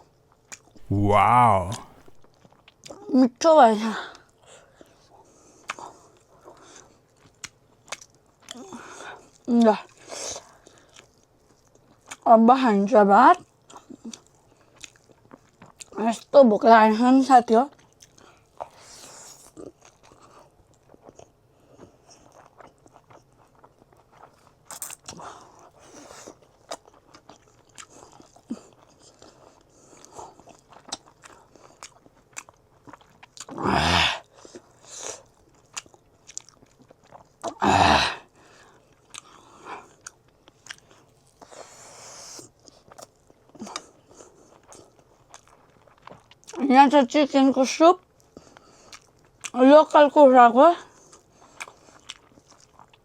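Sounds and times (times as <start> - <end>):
chewing food: 0.0 - 3.1, 4.0 - 12.3, 13.2 - 16.4, 17.5 - 53.0.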